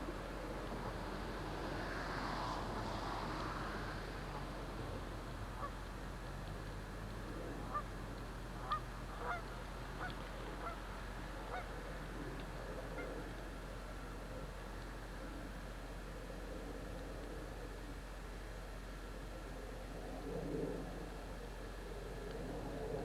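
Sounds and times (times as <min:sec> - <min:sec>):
geese honking: 0:08.6 - 0:10.8, 0:11.5 - 0:11.7.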